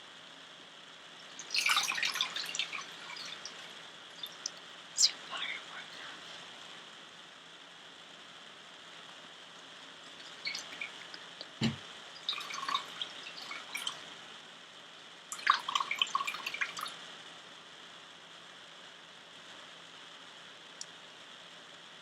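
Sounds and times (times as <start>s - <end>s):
water trickling into a basin: 1.2s - 5.9s, 10.0s - 14.2s, 15.3s - 17.0s
soft low thump: 11.6s - 11.8s.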